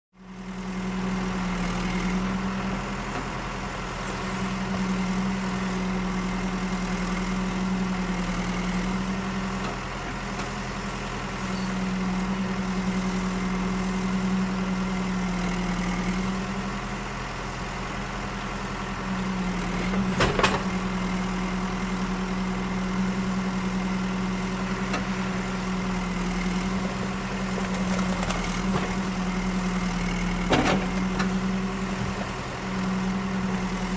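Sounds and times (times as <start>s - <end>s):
machinery engine droning: 0.2s - 33.9s.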